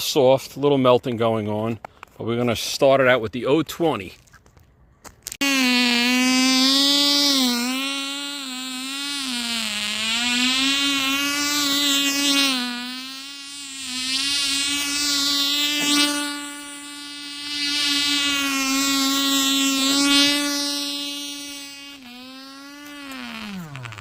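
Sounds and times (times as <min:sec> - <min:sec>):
model engine high whine: 0:05.4 - 0:24.0.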